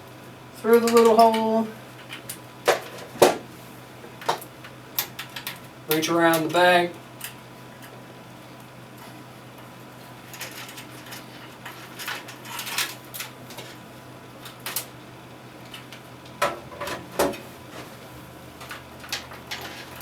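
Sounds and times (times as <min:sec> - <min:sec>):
cable rustling and scraping: 0:09.9 - 0:15.0, 0:15.6 - 0:20.0.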